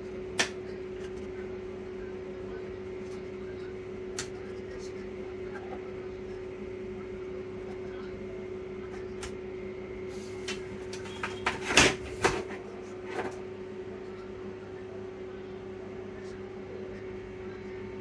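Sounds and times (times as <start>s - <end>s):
low electrical hum: 0.0s - 18.0s.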